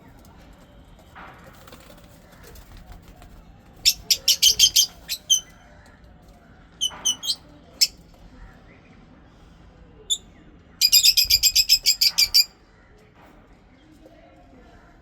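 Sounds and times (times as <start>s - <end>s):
lovebirds chirping: 3.8s - 5.6s, 6.8s - 8.0s, 10.8s - 12.5s.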